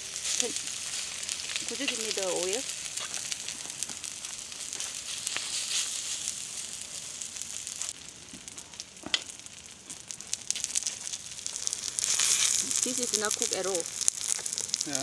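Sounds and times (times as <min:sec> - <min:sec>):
food sizzling in hot oil: 0:00.0 - 0:15.0
sharp oil crackle: 0:00.0 - 0:15.0.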